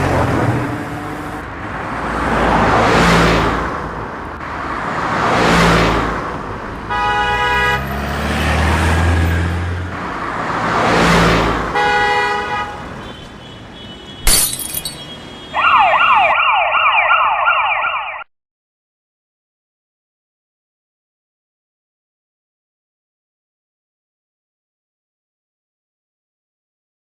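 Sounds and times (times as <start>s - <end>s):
cars whooshing past: 0.0s - 13.0s
car horn honks: 6.9s - 8.0s, 11.7s - 15.8s
wailing siren: 15.5s - 18.3s.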